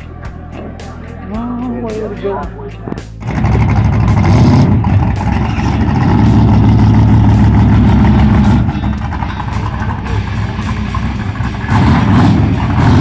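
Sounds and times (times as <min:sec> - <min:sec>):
car engine deep rumble: 0:00.0 - 0:13.0.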